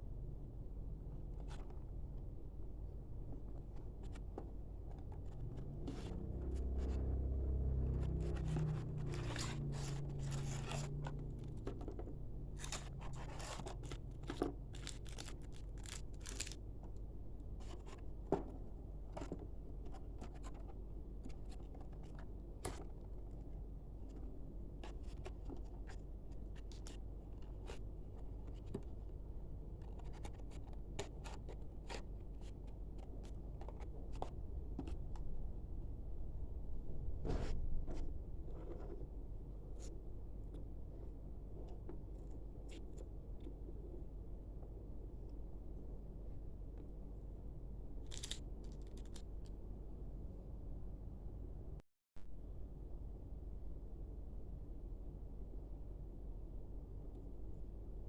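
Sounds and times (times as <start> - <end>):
steady low hum: 0.0 - 58.0
packaging rustling and scraping: 8.0 - 16.6
low rumble: 34.4 - 39.8.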